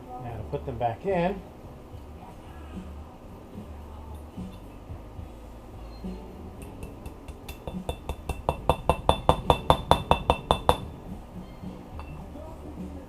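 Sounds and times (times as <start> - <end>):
hammer tapping on metal: 6.6 - 11.1, 12.0 - 12.3.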